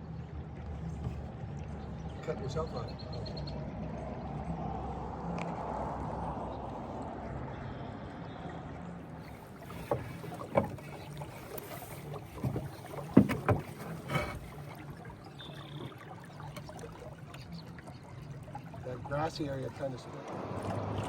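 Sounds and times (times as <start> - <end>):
wind: 0.0 - 21.0
water wash: 3.7 - 21.0
paddle knocks and splashes: 9.2 - 17.5.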